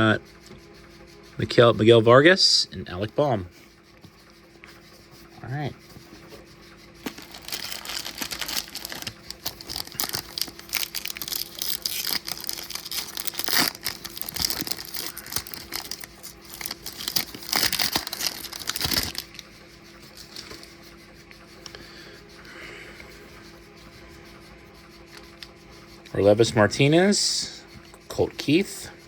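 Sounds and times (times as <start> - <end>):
plastic foil wrapper crinkling and tearing: 7.0 - 19.4.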